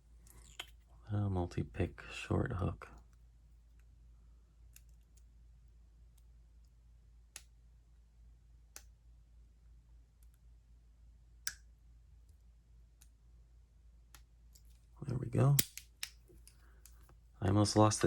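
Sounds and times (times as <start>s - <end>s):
lock pick metallic clicks: 15.6s - 17.0s.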